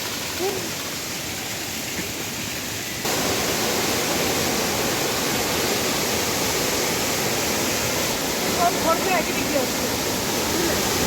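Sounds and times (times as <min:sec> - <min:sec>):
waterfall rushing: 0:00.0 - 0:11.0.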